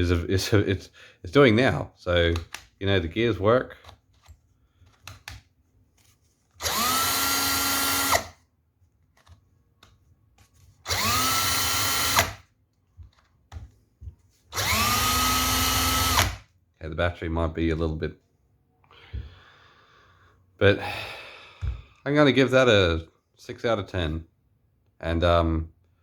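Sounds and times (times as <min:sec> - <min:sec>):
cordless drill motor whining: 0:06.6 - 0:08.4, 0:10.8 - 0:12.4, 0:14.5 - 0:16.4.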